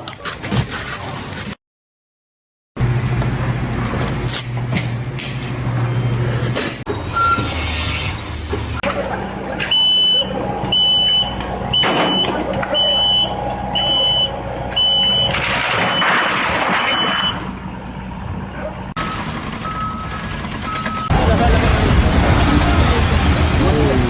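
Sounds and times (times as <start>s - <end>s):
engine hum: 2.8s - 24.0s
vehicle reversing alarm beeping: 6.9s - 7.6s, 9.6s - 17.7s, 19.0s - 21.1s.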